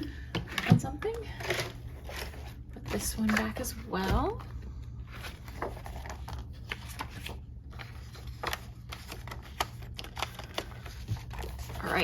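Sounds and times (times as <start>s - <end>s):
steady low hum: 0.0s - 12.0s
paper rustling: 5.0s - 12.0s.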